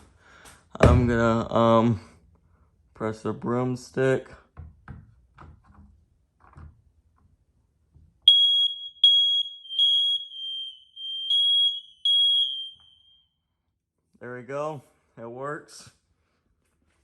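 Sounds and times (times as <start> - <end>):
other smoke alarms beeping: 8.3 - 13.4
smoke alarm piercing beeps: 8.3 - 13.4.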